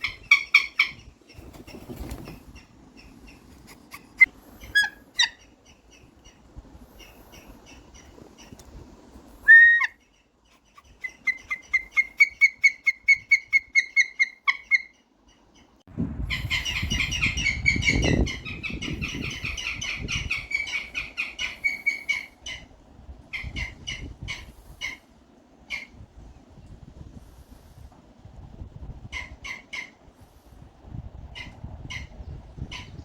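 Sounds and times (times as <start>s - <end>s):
bird of prey harsh calls: 9.5s - 10.0s
low rumble: 15.9s - 20.5s.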